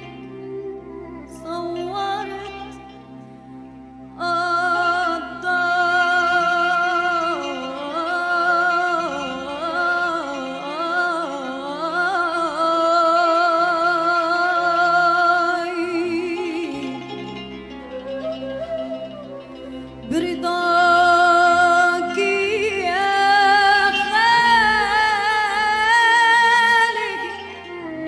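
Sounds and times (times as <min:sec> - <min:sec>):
soft instrumental backing: 0:00.0 - 0:28.0
woman singing wordless melody: 0:00.0 - 0:28.0.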